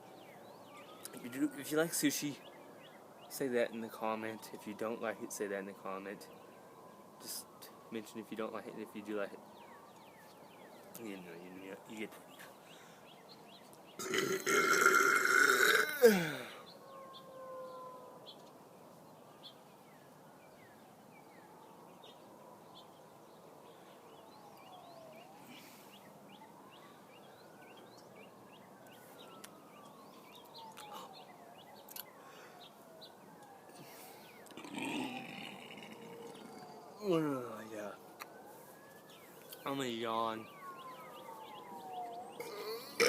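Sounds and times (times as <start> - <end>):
person burping: 14.0 - 16.6, 34.6 - 36.7, 42.4 - 43.0.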